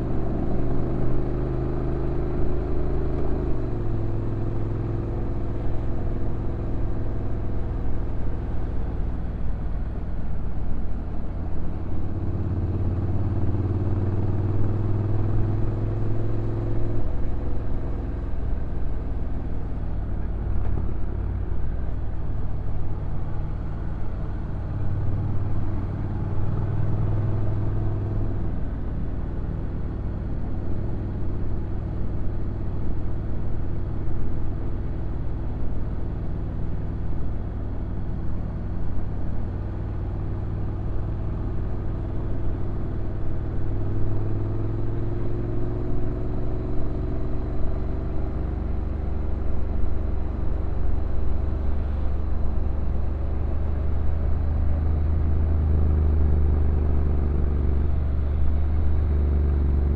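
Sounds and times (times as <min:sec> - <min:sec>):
wind and road noise: 0:00.0 - 0:59.9.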